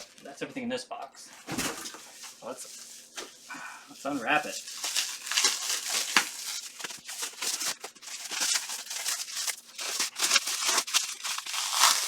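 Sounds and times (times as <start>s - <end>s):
cellophane crinkling and ripping: 1.7s - 12.0s.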